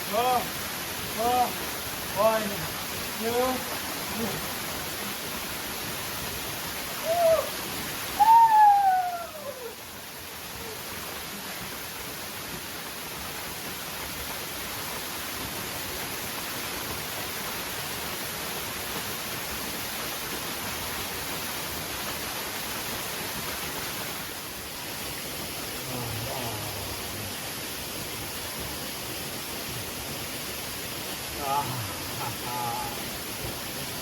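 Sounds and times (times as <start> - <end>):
waterfall rushing: 0.0 - 34.0
low voice: 25.8 - 27.3, 31.4 - 33.1.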